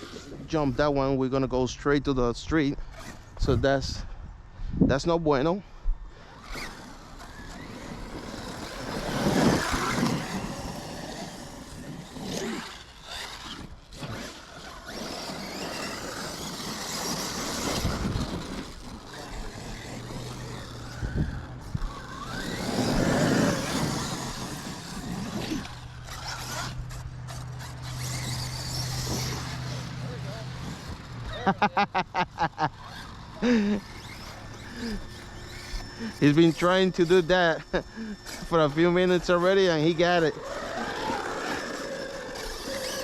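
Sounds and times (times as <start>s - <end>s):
rc car motors surging: 0.0s - 0.9s, 2.8s - 3.6s, 6.1s - 43.0s
steady low hum: 2.8s - 43.0s
tyres scrabbling on dirt: 6.4s - 31.2s, 32.7s - 43.0s.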